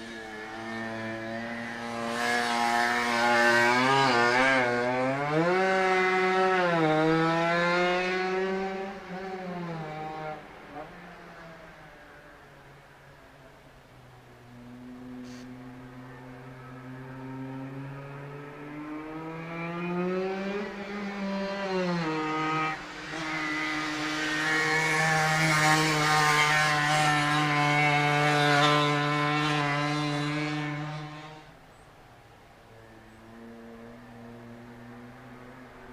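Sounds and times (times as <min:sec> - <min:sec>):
two-stroke engine accelerating: 0:17.3 - 0:31.4.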